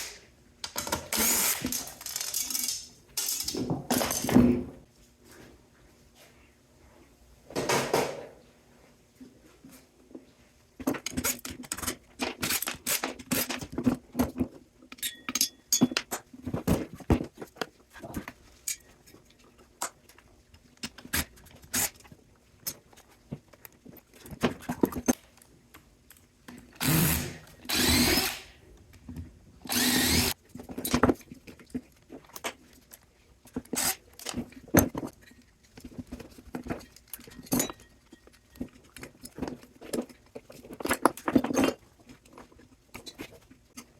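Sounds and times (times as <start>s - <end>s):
power drill running: 1.1s - 2.1s, 26.8s - 28.5s, 29.7s - 30.4s.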